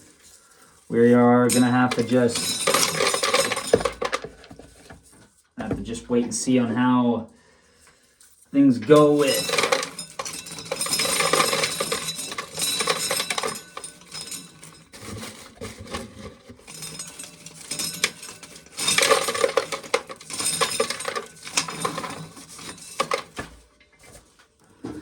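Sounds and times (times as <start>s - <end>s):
corn kernels clicking into container: 8.9s - 15.8s, 16.6s - 23.5s.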